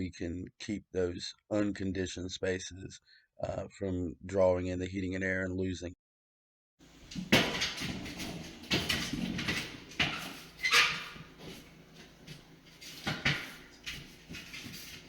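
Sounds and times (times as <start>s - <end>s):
rustling and handling noise: 6.8s - 15.0s
sharp knocks and clunks: 6.9s - 15.0s.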